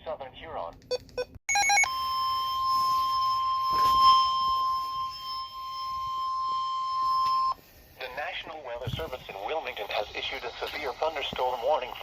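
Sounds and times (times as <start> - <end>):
steady warning alarm tone: 1.5 - 7.6.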